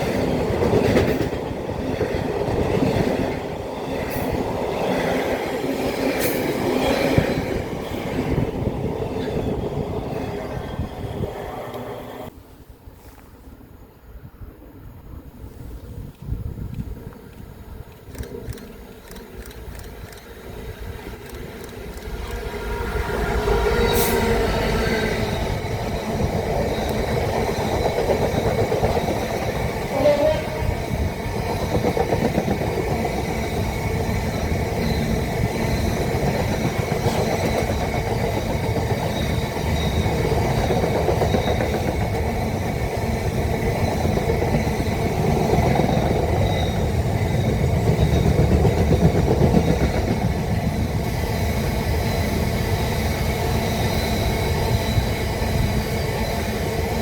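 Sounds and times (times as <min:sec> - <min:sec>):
train wheels on track: 0:00.0 - 0:12.4, 0:15.9 - 0:57.0.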